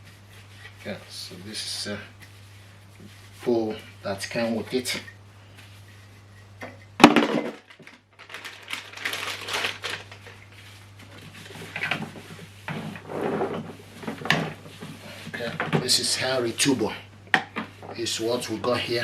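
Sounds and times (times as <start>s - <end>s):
plastic parts rattling and clattering: 7.0s - 10.4s.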